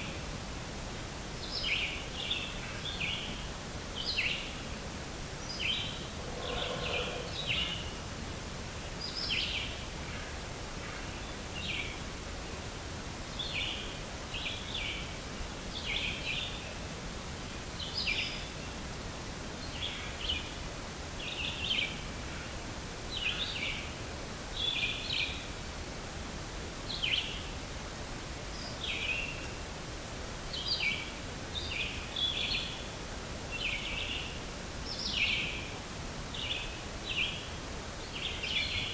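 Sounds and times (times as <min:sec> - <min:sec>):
background hiss: 0:00.0 - 0:38.9
bird chirping: 0:05.5 - 0:08.0.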